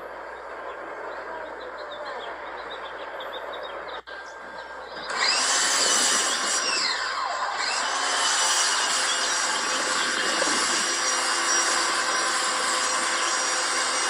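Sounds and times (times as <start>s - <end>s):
faint bird chirps: 0.0s - 5.3s
pressure washer motor whine: 4.1s - 14.0s.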